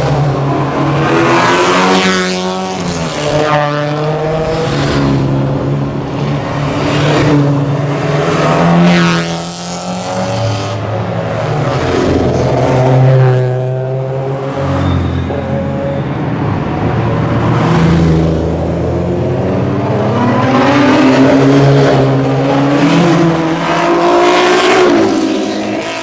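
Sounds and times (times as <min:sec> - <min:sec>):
distant car engines: 0:00.0 - 0:26.0
sports cars passing by: 0:00.0 - 0:26.0.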